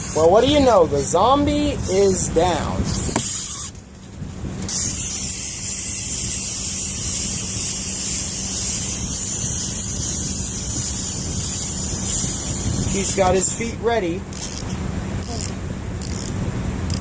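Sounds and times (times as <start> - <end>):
steady loud hiss: 4.7 - 15.5.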